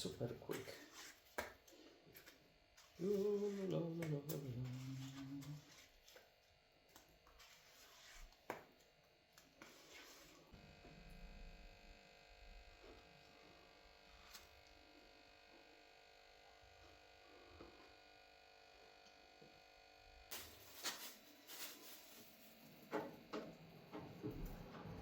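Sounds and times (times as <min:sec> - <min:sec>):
faint steady hum: 0:00.0 - 0:25.0
spreader scraping body filler: 0:09.6 - 0:10.5.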